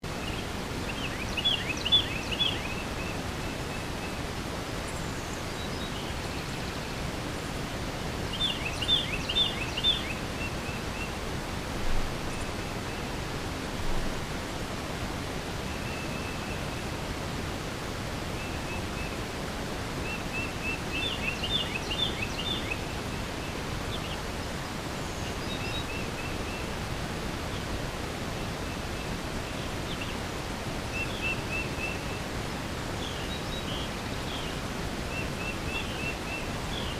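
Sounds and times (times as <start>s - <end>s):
songbird singing trill: 0.2s - 4.2s, 8.3s - 11.1s, 20.1s - 23.0s.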